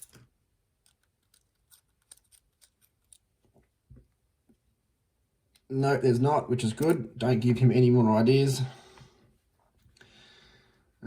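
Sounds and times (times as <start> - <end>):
small clicks and knocks of lock parts: 0.0 - 4.2, 5.4 - 5.7, 6.8 - 7.0.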